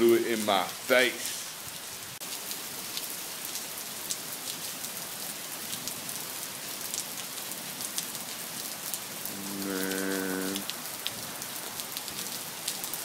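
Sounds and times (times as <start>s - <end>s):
steady rainfall: 0.0s - 13.0s.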